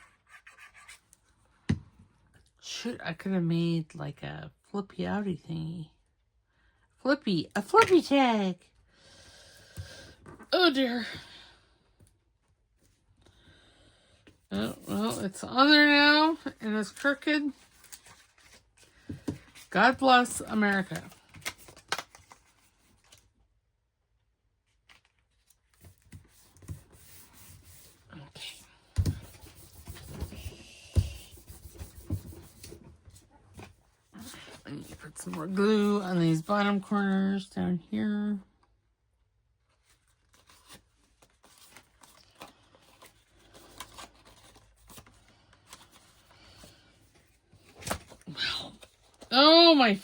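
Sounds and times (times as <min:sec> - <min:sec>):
paper rustling: 0:16.3 - 0:23.3, 0:39.8 - 0:48.2
paper rustling and clicking: 0:16.8 - 0:23.3.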